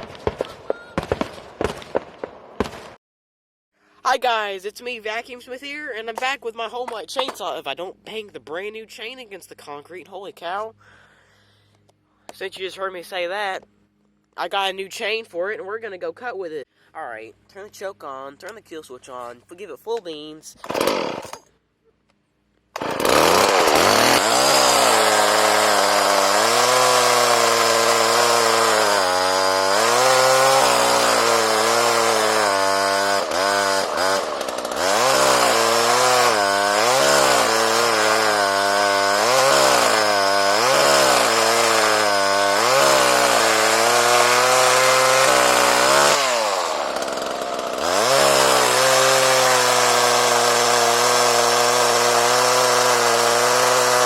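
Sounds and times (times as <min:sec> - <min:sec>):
chainsaw engine revving: 0:20.6 - 0:21.5, 0:22.8 - 0:54.0.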